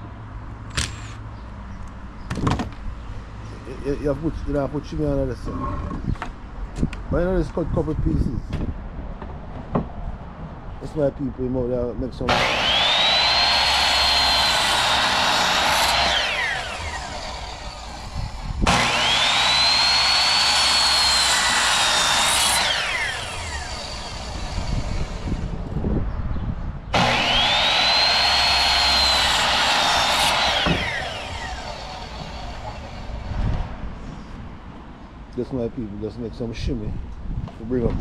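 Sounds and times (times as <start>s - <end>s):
electric saw cutting wood: 12.3s - 25.6s, 26.9s - 33.7s.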